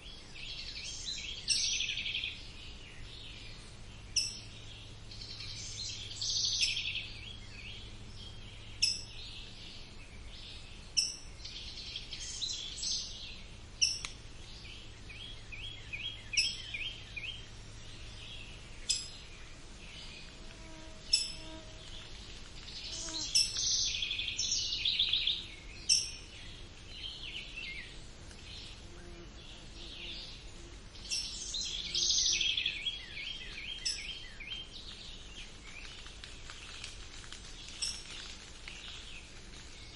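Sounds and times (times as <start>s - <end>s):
songbirds singing and trilling: 0.0s - 39.9s.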